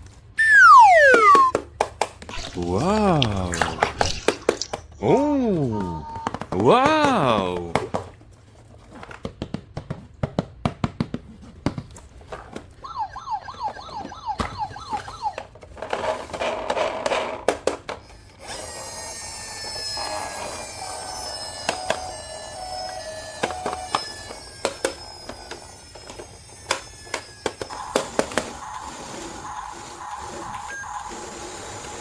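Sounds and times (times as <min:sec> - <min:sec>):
toy siren wailing: 0:00.4 - 0:01.6, 0:12.8 - 0:15.6, 0:18.4 - 0:32.0
toy tune playing: 0:00.4 - 0:01.6, 0:12.8 - 0:15.6, 0:19.2 - 0:32.0.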